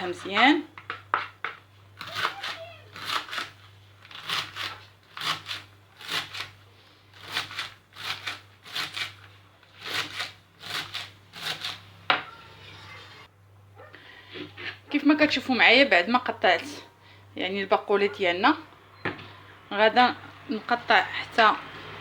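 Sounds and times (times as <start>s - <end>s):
knife chopping leaves: 2.0s - 9.2s, 9.8s - 11.8s.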